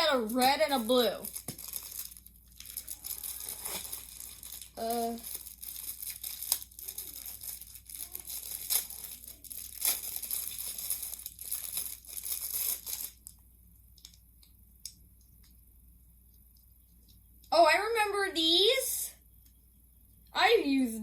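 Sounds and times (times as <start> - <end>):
packaging crinkling and tearing: 0.0 - 13.4.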